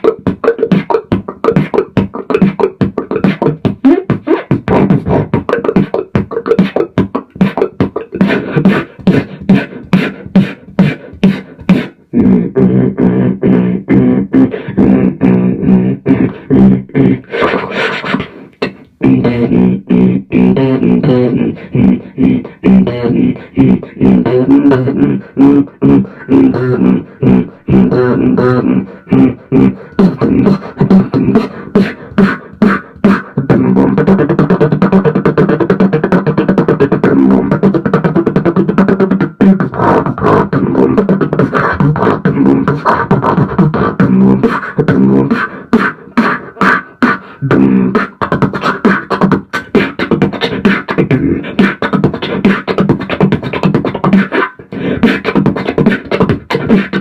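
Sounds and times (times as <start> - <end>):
beatboxing into microphone: 0.0 - 57.0
hummed bass line: 12.2 - 17.7, 19.0 - 45.3, 47.4 - 48.0.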